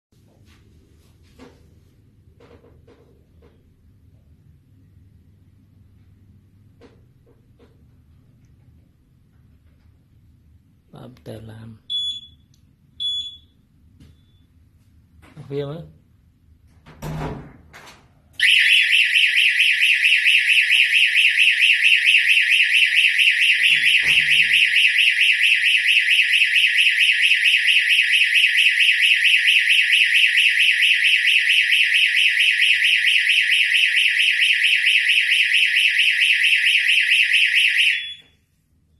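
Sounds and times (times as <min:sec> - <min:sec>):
pulsing electronic alarm siren: 0:18.4 - 0:38.3.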